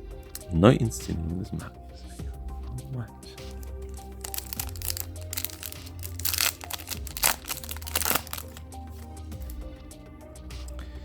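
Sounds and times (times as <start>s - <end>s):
background music with bass: 0.0s - 11.0s
wrapper crinkling and tearing: 3.4s - 8.8s.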